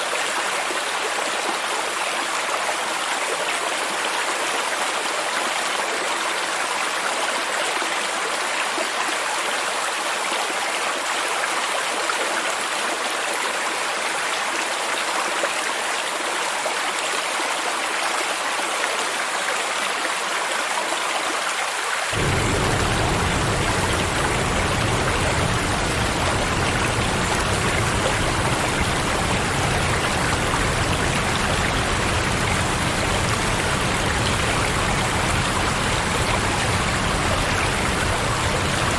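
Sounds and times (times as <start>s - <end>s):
stream and waterfall rushing: 20.7s - 38.9s
deep low rumble: 22.2s - 38.9s.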